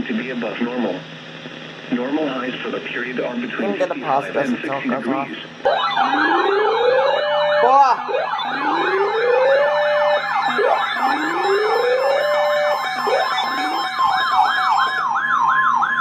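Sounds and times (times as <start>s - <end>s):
electronic siren yelp: 5.6s - 16.0s
siren wail: 5.6s - 16.0s.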